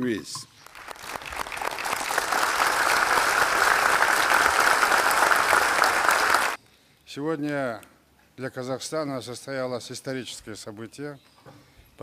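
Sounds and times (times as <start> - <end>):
crowd applauding: 0.6 - 6.6.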